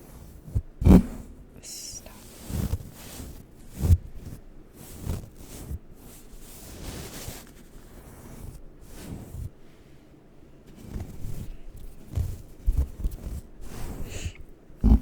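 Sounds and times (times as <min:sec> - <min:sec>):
brush swishing over microphone: 0:00.0 - 0:09.8, 0:10.7 - 0:15.0
muffled low thumps: 0:00.8 - 0:01.5.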